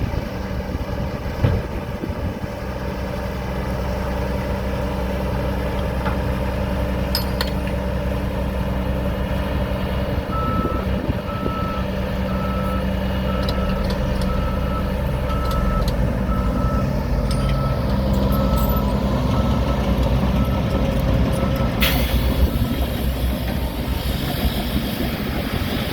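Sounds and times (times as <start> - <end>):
heavy vehicle engine running: 0.0 - 25.9
reverse alarm beeping: 10.3 - 19.8.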